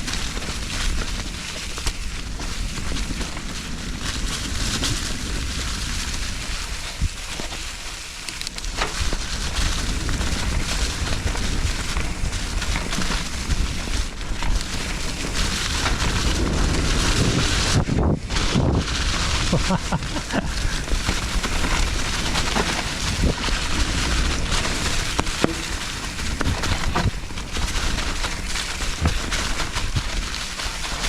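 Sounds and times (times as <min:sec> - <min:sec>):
bike knocks and rattles: 0:00.0 - 0:31.0
bike tyres on dirt trail: 0:00.0 - 0:31.0
wind on microphone: 0:08.6 - 0:31.0.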